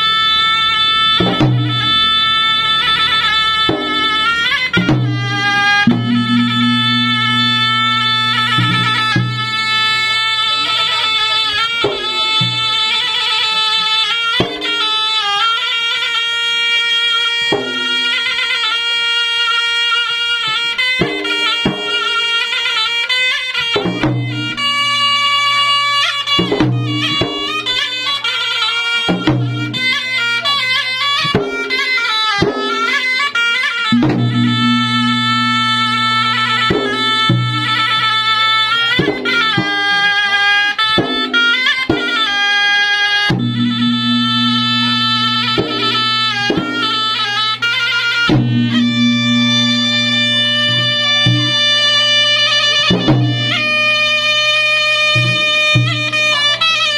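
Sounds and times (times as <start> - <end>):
reedy wind instrument melody: 0.0 - 56.9
drums beating: 1.2 - 2.0, 3.5 - 12.8, 26.2 - 33.1, 33.9 - 40.0, 43.3 - 52.1, 52.8 - 56.5.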